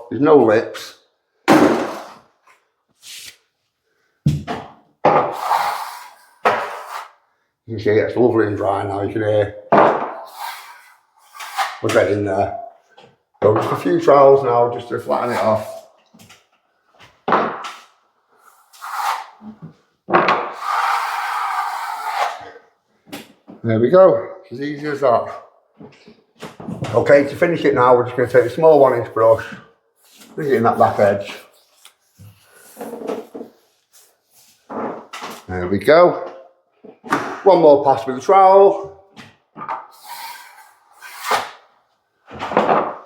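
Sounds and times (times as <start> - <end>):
hand tool scraping plaster: 5.2 - 7.2, 10.2 - 12.5, 15.0 - 15.9, 18.5 - 19.7, 20.4 - 22.6, 40.0 - 41.6.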